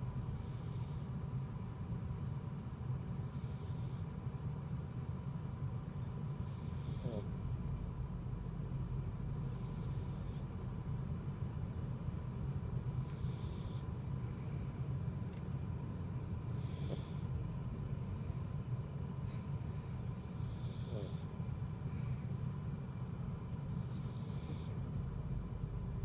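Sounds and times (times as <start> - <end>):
dog snoring: 0.1 - 1.6, 3.2 - 5.0, 6.3 - 8.2, 8.8 - 12.2, 12.8 - 14.9, 16.3 - 19.5, 20.1 - 22.2, 23.6 - 26.0
low car rumble: 4.0 - 13.2.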